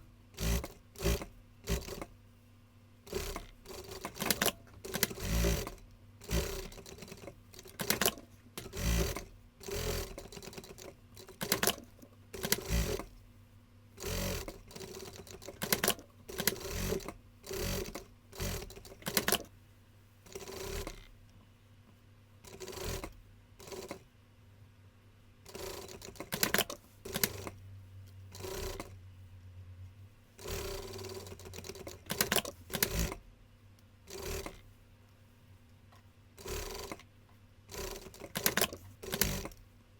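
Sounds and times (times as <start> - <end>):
sewing machine running in bursts: 0.4 - 2.1, 3.1 - 11.8, 12.4 - 13.1, 14.0 - 19.4, 20.3 - 21.0, 22.5 - 24.0, 30.4 - 33.2, 34.1 - 34.6, 36.4 - 37.0, 37.7 - 39.6.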